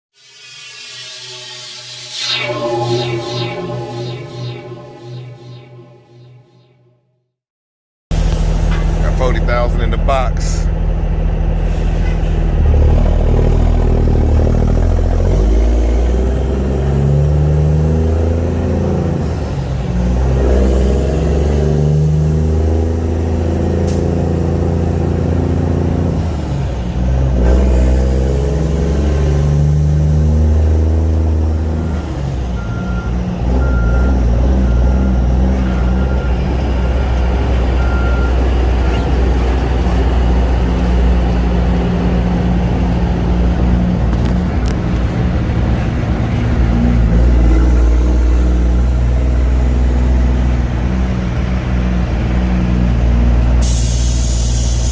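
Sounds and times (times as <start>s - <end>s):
high-pitched beeping: 0.2s - 6.8s.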